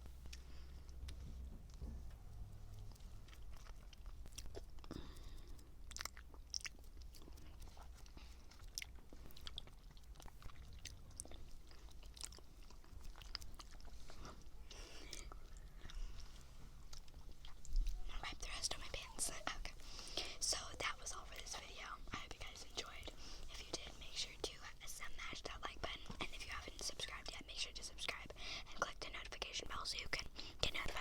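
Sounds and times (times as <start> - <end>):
person chewing: 2.6 - 18.1.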